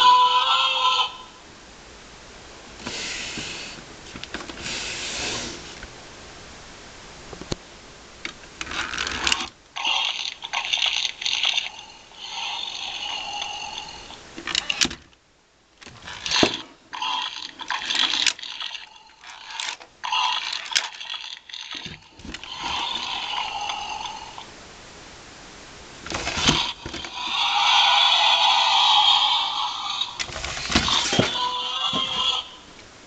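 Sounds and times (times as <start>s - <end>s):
tinny electronic toy sound effects: 26.1s - 32.7s.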